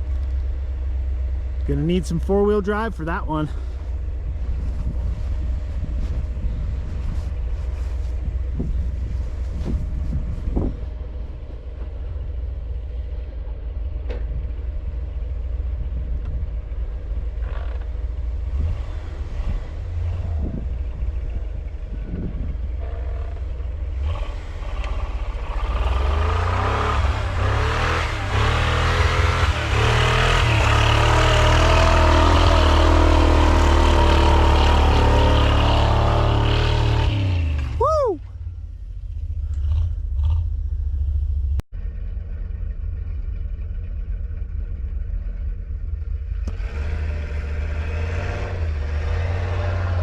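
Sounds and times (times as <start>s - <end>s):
car engine running: 0.0s - 48.2s
engine knocking: 39.0s - 41.2s.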